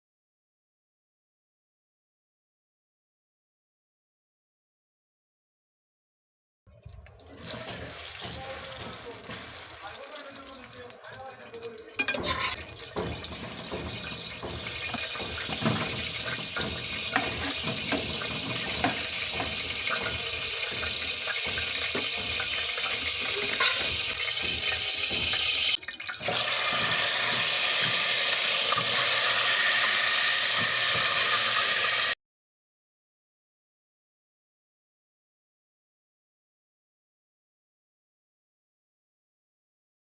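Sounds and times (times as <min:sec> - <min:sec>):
tap water pouring into sink: 0:06.7 - 0:32.2
small knocks and clinks: 0:06.8 - 0:29.1.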